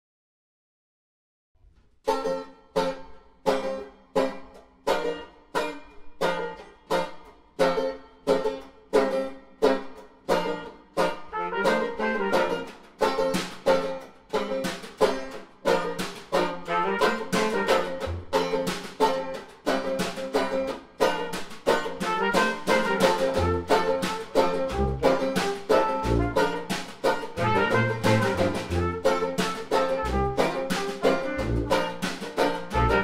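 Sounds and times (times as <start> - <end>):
banjo strumming chords: 2.1 - 33.0
brass instruments melody: 11.2 - 13.3, 16.4 - 18.7, 21.9 - 33.0.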